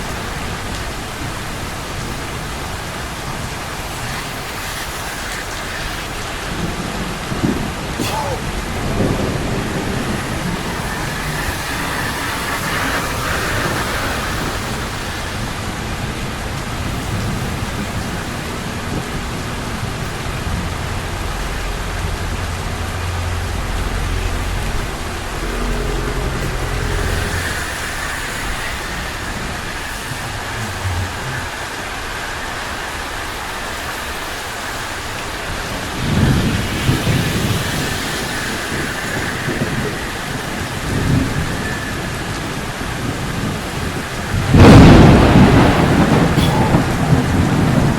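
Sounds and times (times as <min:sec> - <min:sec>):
rain on street: 0:00.0 - 0:47.9
low rumble: 0:06.6 - 0:32.9.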